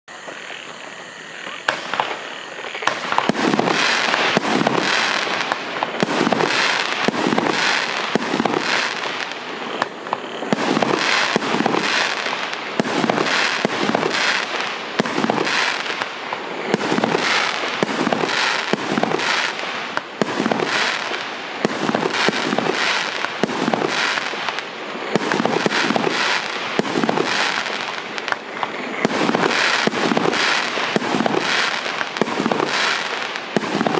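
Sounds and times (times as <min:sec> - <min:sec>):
firework shots banging and crackling: 0:01.5 - 0:33.9.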